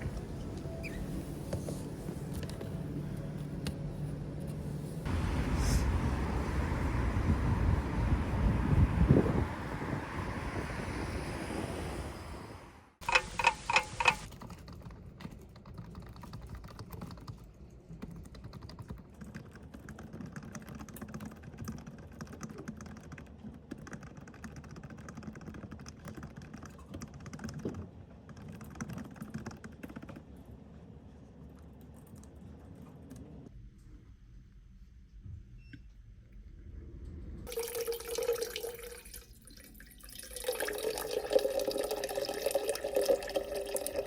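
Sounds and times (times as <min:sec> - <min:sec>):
wind noise: 0:05.1 - 0:14.0
typing on computer keyboard: 0:13.1 - 0:30.5.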